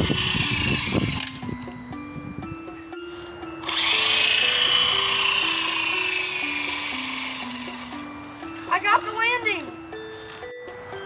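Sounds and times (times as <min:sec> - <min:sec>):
toy drone motors whining: 0:00.0 - 0:01.7, 0:03.2 - 0:08.7
background music with stepping melody: 0:00.0 - 0:11.0.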